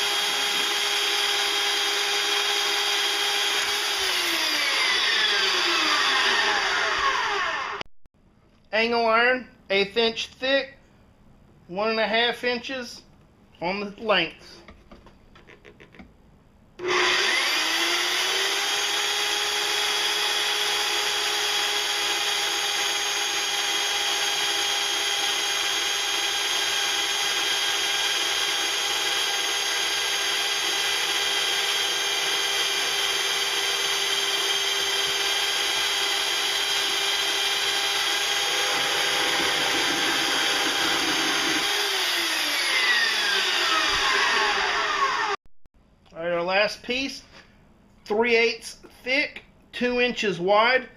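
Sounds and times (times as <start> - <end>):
band saw cutting steel: 0.0 - 7.8, 16.8 - 45.4
motor winding down: 0.0 - 7.8, 16.8 - 45.4.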